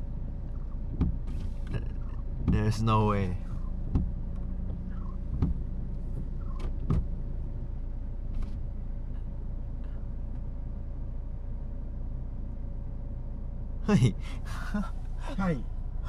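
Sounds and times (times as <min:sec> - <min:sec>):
car engine idling: 0:00.0 - 0:16.0.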